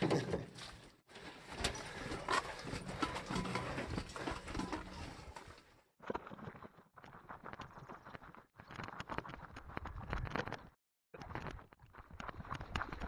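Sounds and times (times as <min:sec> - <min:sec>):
gear rattling and rustling: 0:01.2 - 0:05.6.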